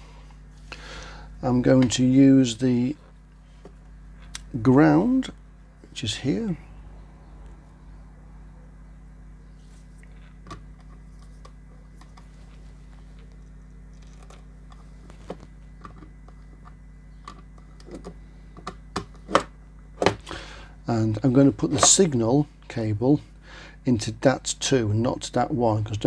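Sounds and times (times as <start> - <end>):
steady low hum: 0.0 - 26.0
clicks of wires being handled: 9.8 - 20.5, 21.6 - 22.2.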